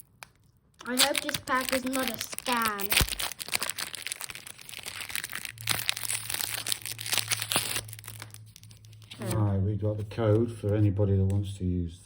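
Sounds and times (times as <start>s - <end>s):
wrapper crinkling: 0.0s - 9.4s.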